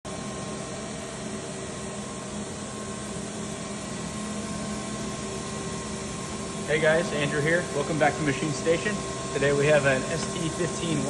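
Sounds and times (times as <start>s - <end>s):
machinery humming: 0.1s - 11.0s.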